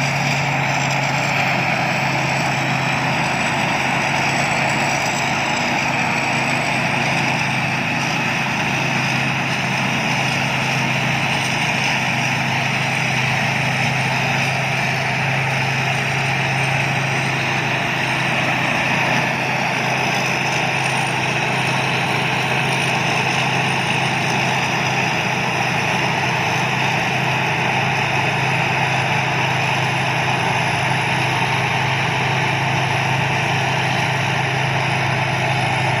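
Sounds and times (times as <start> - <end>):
combine harvester engine running: 0.0 - 36.0.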